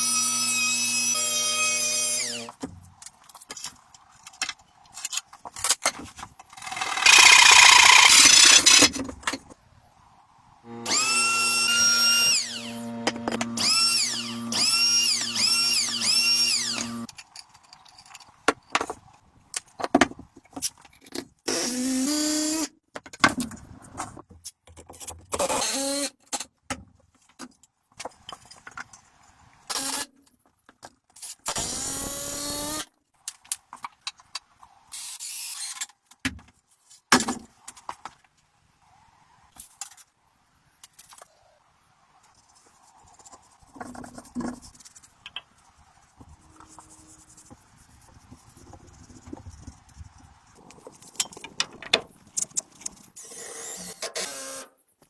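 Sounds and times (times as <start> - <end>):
power tool on wood: 6.6 - 8.9, 10.7 - 17.1.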